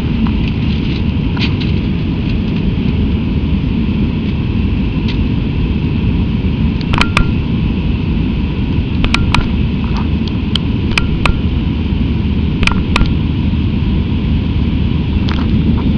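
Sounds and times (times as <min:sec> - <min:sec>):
air noise: 0:00.0 - 0:15.9
airliner engine rumble: 0:00.0 - 0:15.9
sharp clicks or rattles: 0:12.6 - 0:13.2.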